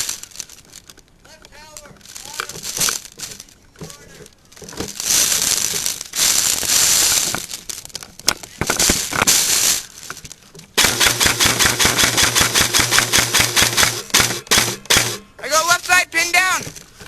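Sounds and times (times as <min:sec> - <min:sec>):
airsoft rifle full auto fire: 0:10.8 - 0:15.2.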